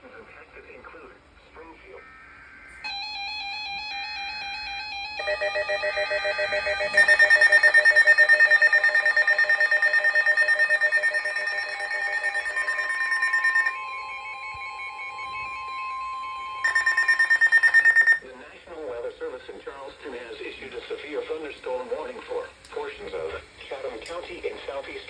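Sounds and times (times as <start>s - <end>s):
electronic beeping and warbling alarm: 2.8s - 18.2s
steady warning tone: 2.8s - 18.2s.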